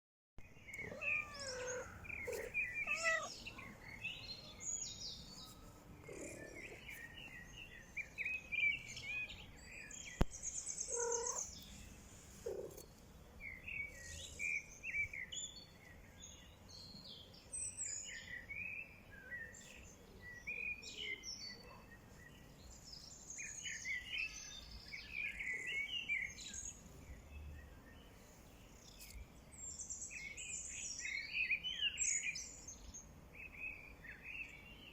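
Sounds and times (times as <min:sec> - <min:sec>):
birds chirping and trilling: 0:00.4 - 0:34.9
low bird calls: 0:00.6 - 0:03.8, 0:10.8 - 0:11.5.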